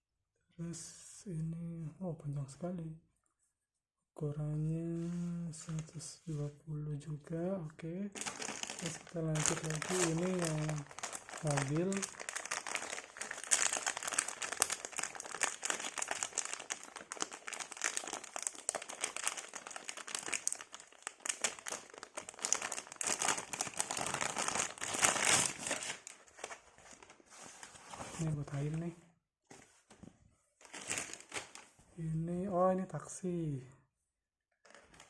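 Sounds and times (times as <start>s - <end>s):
packaging crinkling and rustling: 8.2s - 28.7s, 30.6s - 31.8s, 34.6s - 35.0s.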